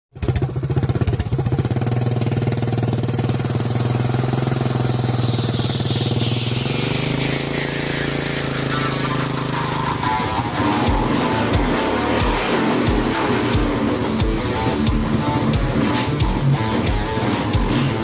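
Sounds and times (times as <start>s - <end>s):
high engine whine: 0.2s - 18.0s
small engine running: 0.2s - 18.0s.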